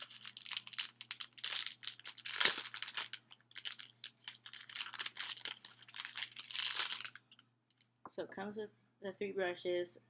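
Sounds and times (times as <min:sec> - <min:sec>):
packaging crinkling and rustling: 0:00.0 - 0:07.4.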